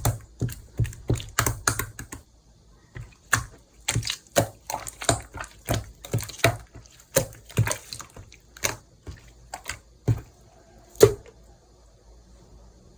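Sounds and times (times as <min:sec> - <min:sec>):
slime squelching under hand: 0:02.9 - 0:11.3.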